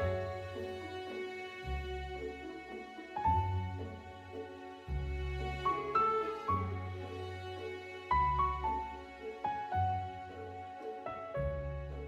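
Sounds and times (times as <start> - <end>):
slow instrumental music: 0.0 - 12.0
deep bass notes: 3.3 - 5.9, 11.4 - 12.0.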